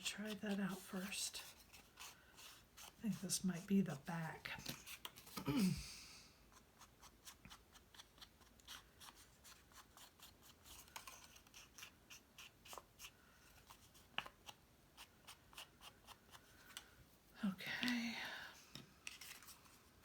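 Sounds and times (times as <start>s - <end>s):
brush scratching on cardstock: 0.0s - 3.7s.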